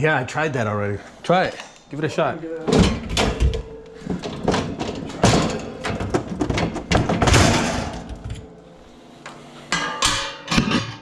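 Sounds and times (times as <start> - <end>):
knocks bangs and clattering: 2.7 - 8.5.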